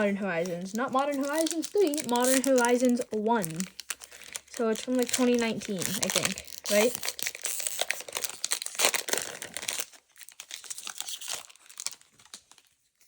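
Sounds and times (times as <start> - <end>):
foil wrapper crinkling and tearing: 0.0 - 13.0.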